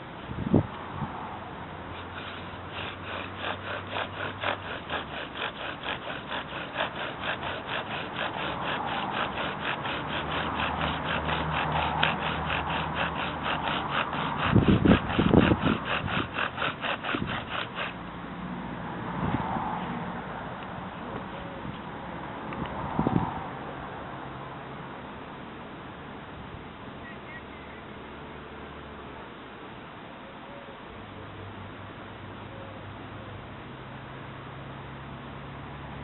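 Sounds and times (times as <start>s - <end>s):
bow drill spindle rasping: 1.9s - 18.0s.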